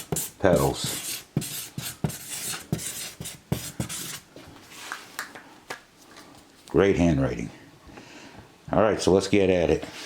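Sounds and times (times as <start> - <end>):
pen scratching on cardboard: 0.0 - 4.2.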